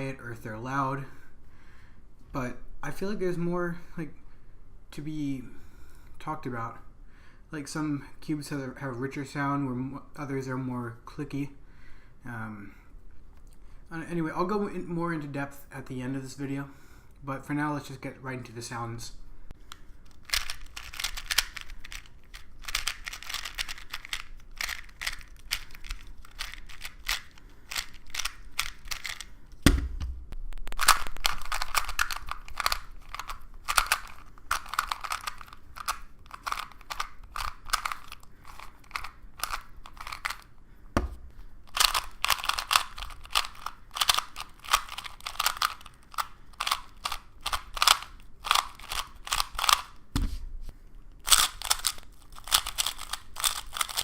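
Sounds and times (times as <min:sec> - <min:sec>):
plastic puzzle cube clicking: 0:19.7 - 0:29.3, 0:30.6 - 0:40.5, 0:41.7 - 0:50.0, 0:51.2 - 0:54.0
low thump: 0:29.6 - 0:30.6, 0:41.0 - 0:41.3.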